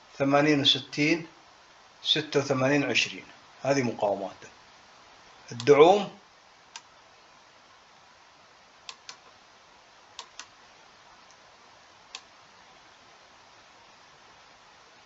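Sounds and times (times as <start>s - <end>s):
faint steady hiss: 0.0s - 15.0s
computer mouse clicking: 8.9s - 9.3s, 10.2s - 10.5s.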